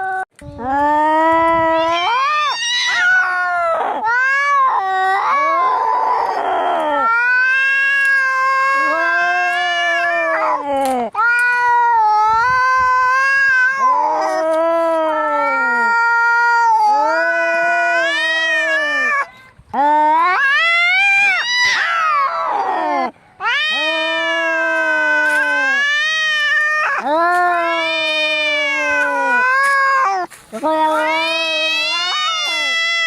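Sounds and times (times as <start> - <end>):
cats yowling in a fight: 0.0 - 33.0.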